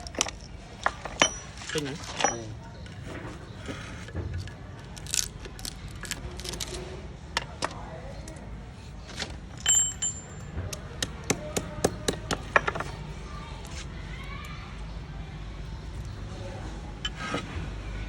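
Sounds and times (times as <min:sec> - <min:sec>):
metal ringing clink: 0:00.0 - 0:02.5, 0:09.5 - 0:10.6.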